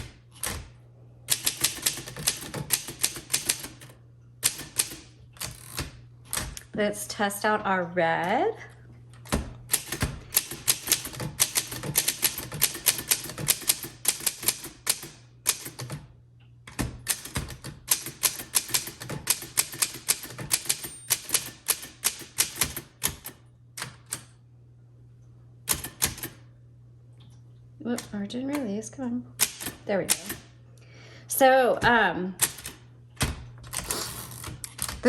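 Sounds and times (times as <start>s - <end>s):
manual typewriter typing: 1.3s - 6.6s, 9.2s - 16.1s, 16.7s - 24.3s, 25.7s - 26.4s, 29.4s - 30.5s, 31.8s - 35.0s.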